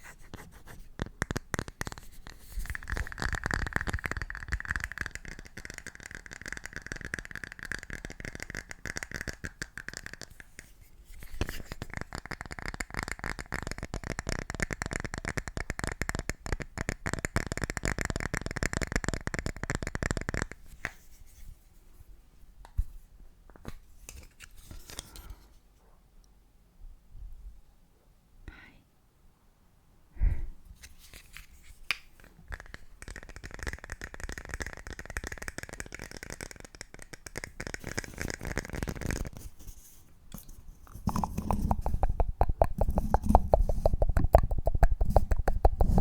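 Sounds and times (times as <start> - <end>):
fast dense tapping: 41.0 - 46.0.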